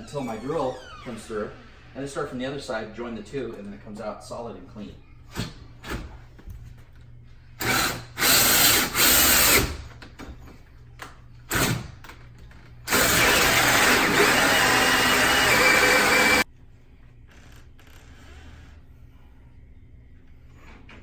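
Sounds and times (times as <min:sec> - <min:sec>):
power drill with hole saw cutting: 0:07.6 - 0:09.8, 0:12.9 - 0:16.4.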